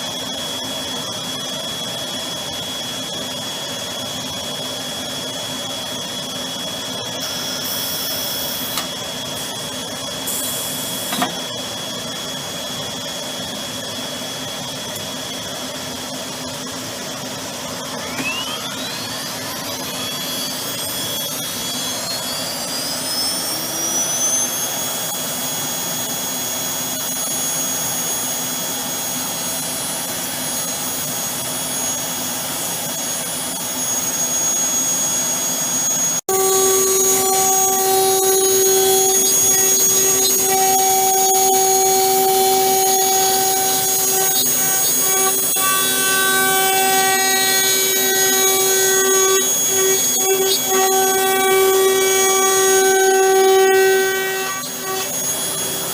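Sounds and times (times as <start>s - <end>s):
machinery hum: 0.0s - 55.9s
router spindle whine: 0.0s - 55.9s
click: 8.7s - 8.9s.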